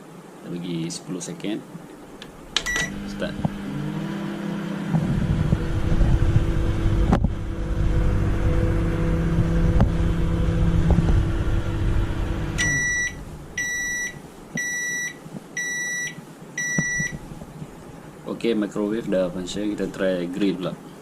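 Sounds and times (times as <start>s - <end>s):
microwave click: 2.2s - 3.6s, 12.5s - 13.8s
microwave oven humming: 2.2s - 17.4s
high beeps: 2.6s - 3.0s, 12.6s - 17.2s.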